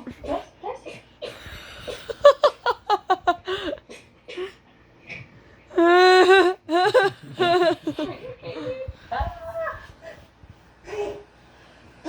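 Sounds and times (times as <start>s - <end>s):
people giggling: 1.9s - 3.8s, 6.3s - 8.9s.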